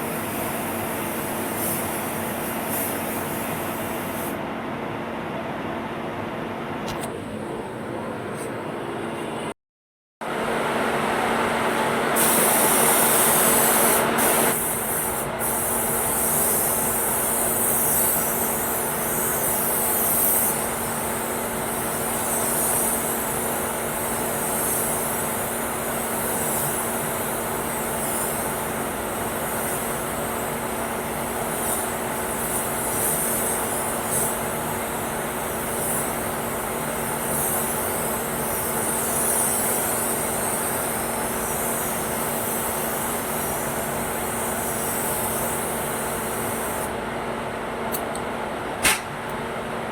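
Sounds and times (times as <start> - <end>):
paint spray gun hissing: 0.0 - 4.4, 12.1 - 47.0.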